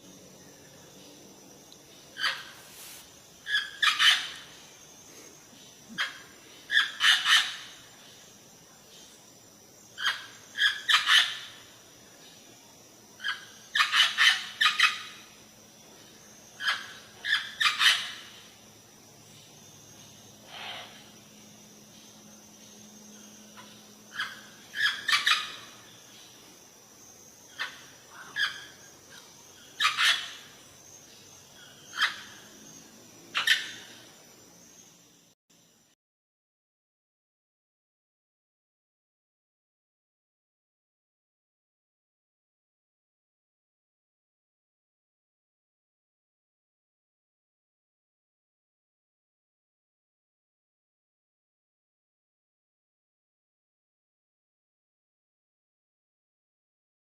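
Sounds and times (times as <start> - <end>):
parrots squawking: 2.2 - 2.5, 3.5 - 4.4, 24.1 - 25.6
parrots calling: 2.2 - 4.5, 6.0 - 7.8, 10.0 - 11.6, 13.2 - 15.2, 16.6 - 18.4, 23.6 - 25.8, 27.5 - 28.8, 29.7 - 30.5, 31.7 - 32.5, 33.4 - 33.9.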